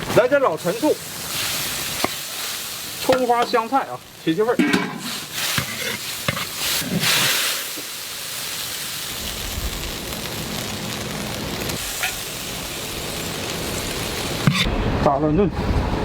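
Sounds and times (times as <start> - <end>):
stew sizzling in a wok: 0.0 - 15.0
stirring strokes: 5.0 - 7.4
low rumble: 9.2 - 10.3.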